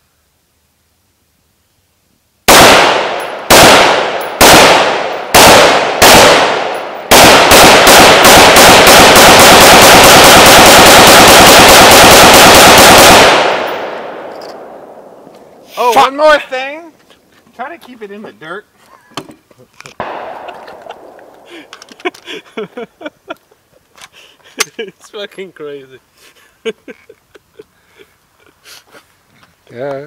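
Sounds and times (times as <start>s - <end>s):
rifle shots: 2.5s - 15.1s, 20.0s - 21.6s.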